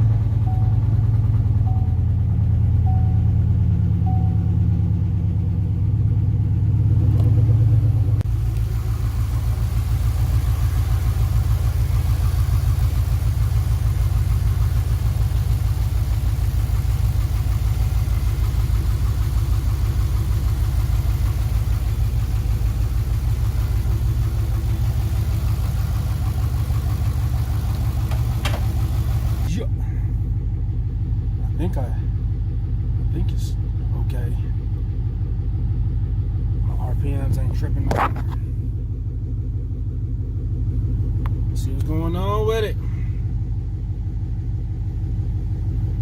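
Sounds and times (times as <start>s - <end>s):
car engine idling: 0.0s - 46.0s.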